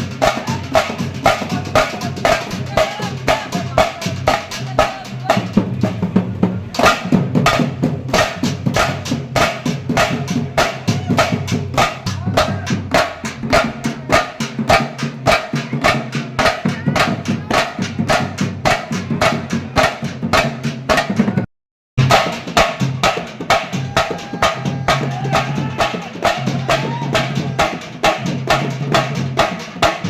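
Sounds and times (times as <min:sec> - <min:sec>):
music with fast drum beat: 0:00.0 - 0:30.0.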